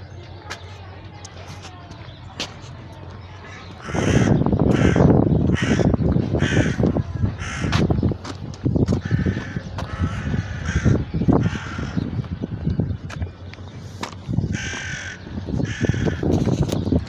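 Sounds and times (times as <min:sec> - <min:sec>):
crows cawing: 0:03.5 - 0:07.9, 0:09.0 - 0:12.1, 0:14.5 - 0:16.4.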